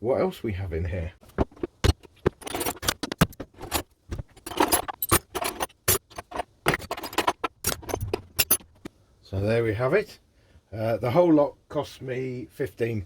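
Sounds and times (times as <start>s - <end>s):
metal hand tools clinking: 1.6s - 8.9s.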